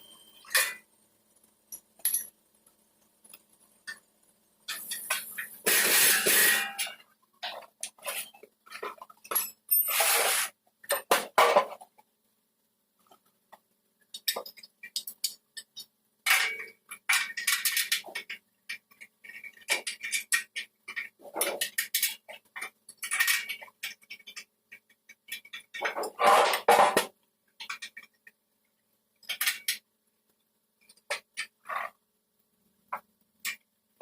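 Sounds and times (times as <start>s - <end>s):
metal parts and tools clinking: 0.0s - 2.4s, 4.7s - 11.8s, 14.1s - 28.4s, 29.2s - 29.9s.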